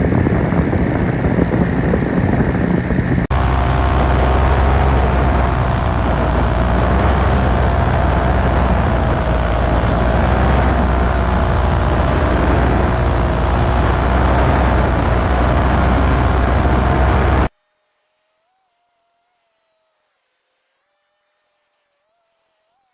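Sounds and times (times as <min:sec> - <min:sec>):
paramotor engine and propeller: 0:00.0 - 0:17.5
wind noise on microphone: 0:00.0 - 0:17.5.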